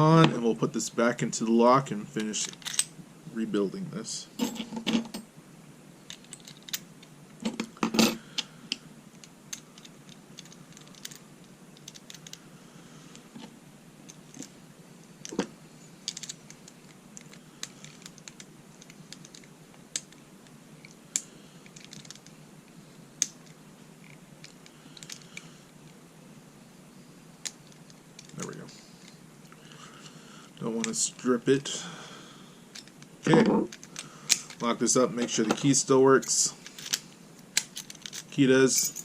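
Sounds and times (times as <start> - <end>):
padlock parts clicking: 9.2 - 11.2, 11.8 - 12.4, 16.0 - 20.2, 20.8 - 22.3, 36.3 - 38.4.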